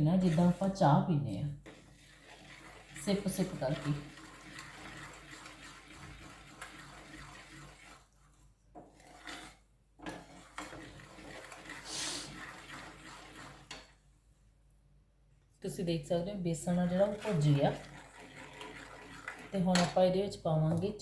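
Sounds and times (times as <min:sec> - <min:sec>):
metal ladle scraping a pan: 0:01.6 - 0:08.2, 0:08.8 - 0:13.9, 0:16.9 - 0:20.1.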